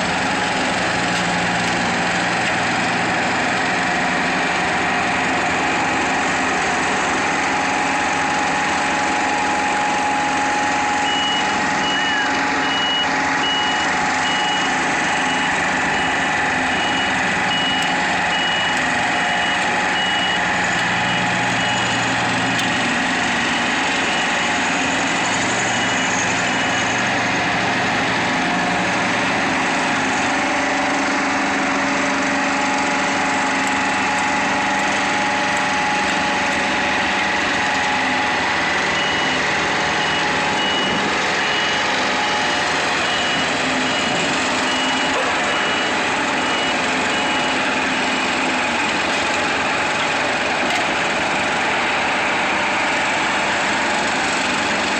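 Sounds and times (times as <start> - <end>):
heavy diesel equipment running: 0.0 - 54.9
reversing alarm beeping: 5.2 - 28.9, 29.5 - 49.2.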